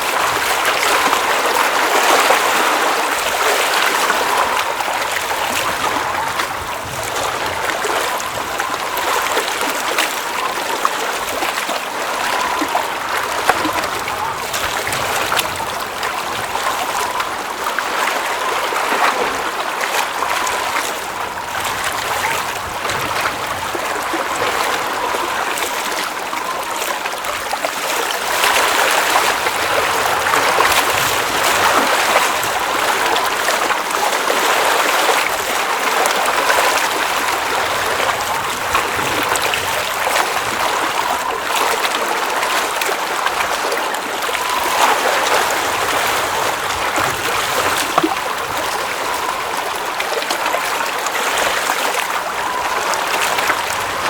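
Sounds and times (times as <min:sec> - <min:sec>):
small water splashes: 0:00.0 - 0:54.0.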